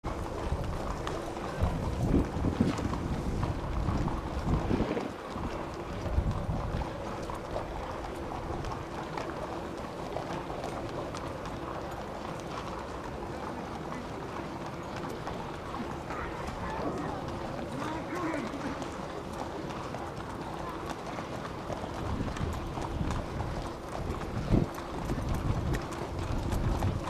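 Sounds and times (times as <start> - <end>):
wind rumbling on microphone: 0.0 - 11.2, 21.6 - 27.0
horse hooves clip-clopping: 0.0 - 27.0.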